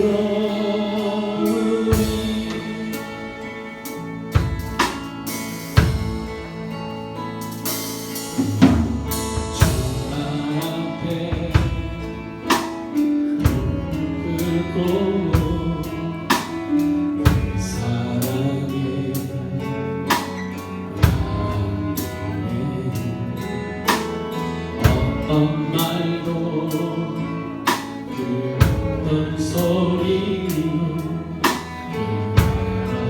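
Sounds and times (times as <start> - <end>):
people singing: 0.0 - 4.1, 8.4 - 12.8, 13.4 - 20.3, 21.0 - 33.0
drum kit slow beat: 0.0 - 19.4, 20.0 - 26.1, 27.6 - 29.8, 30.4 - 33.0
worship band playing: 0.0 - 33.0.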